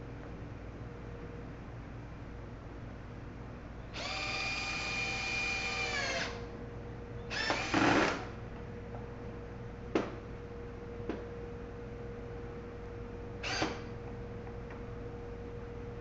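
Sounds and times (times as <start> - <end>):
power drill driving screws: 4.0 - 6.4, 7.3 - 8.2.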